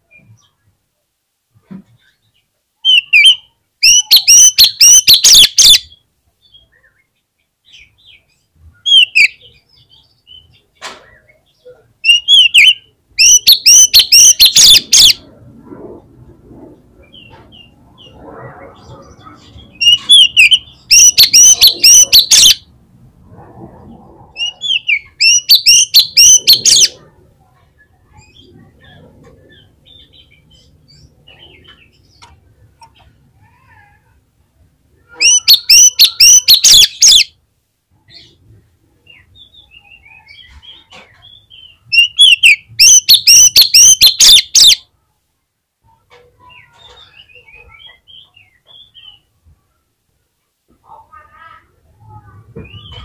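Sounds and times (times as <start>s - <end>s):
bird chattering song: 2.0s - 15.3s, 17.0s - 22.7s, 24.4s - 27.1s, 35.1s - 37.3s, 39.0s - 44.8s.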